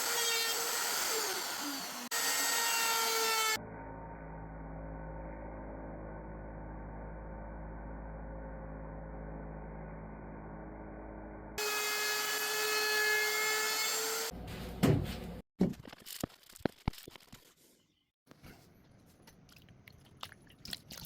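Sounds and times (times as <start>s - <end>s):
woodworking power tool running: 0.0s - 14.3s.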